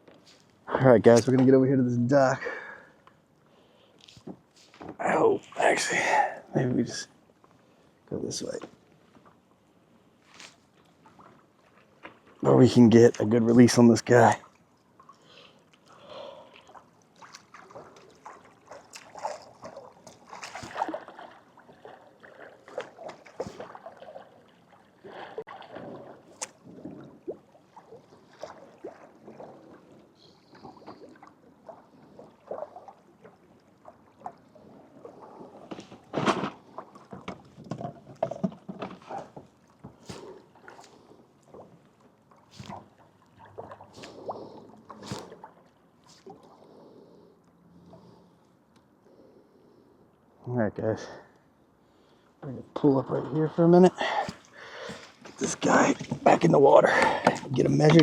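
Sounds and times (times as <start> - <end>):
water sloshing against kayak hull: 8.5 - 13.4, 14.1 - 49.3, 53.2 - 58.0.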